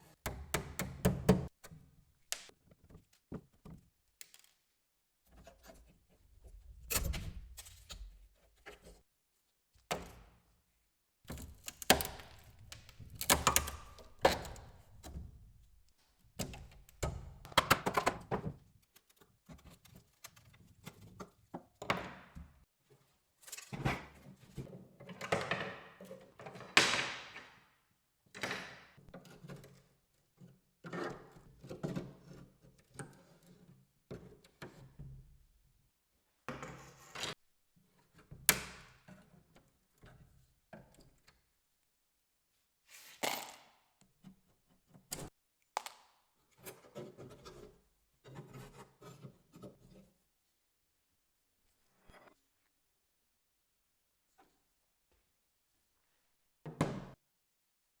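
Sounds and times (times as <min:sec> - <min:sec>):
scraping and handling noise: 0:42.8 - 0:43.6.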